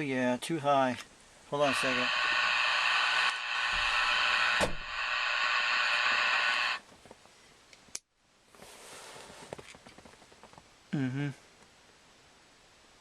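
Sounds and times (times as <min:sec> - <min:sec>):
radio static hiss: 0:01.5 - 0:06.9.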